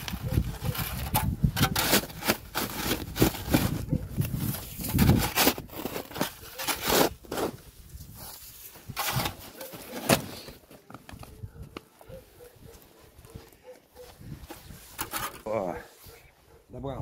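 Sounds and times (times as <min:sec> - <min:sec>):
shovel digging snow: 0:00.3 - 0:10.6, 0:14.4 - 0:16.1
crunching in deep snow: 0:01.8 - 0:10.5.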